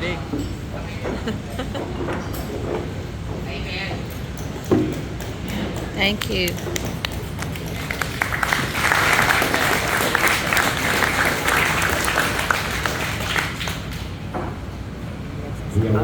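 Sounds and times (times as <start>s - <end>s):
crowd applauding: 5.2s - 14.2s.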